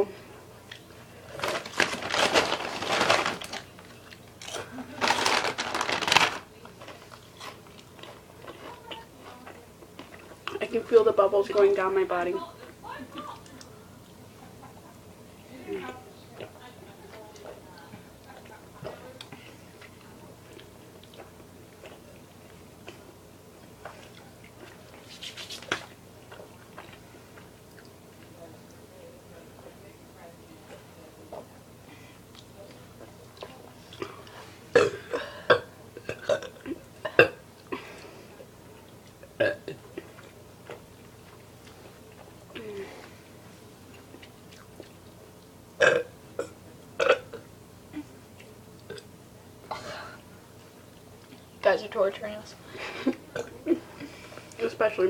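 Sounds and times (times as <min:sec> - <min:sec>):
person chewing food: 0:03.8 - 0:05.4, 0:06.9 - 0:10.6, 0:15.8 - 0:28.4, 0:32.2 - 0:34.9, 0:38.4 - 0:46.0
girl burping: 0:34.8 - 0:37.4, 0:39.4 - 0:39.8, 0:45.8 - 0:47.4, 0:53.3 - 0:53.8.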